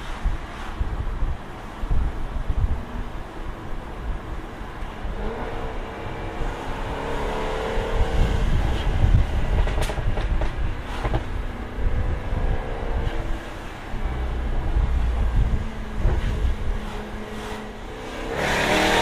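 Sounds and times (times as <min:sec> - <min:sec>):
car engine accelerating: 0:05.0 - 0:19.0
exhaust crackles and pops: 0:08.2 - 0:11.5.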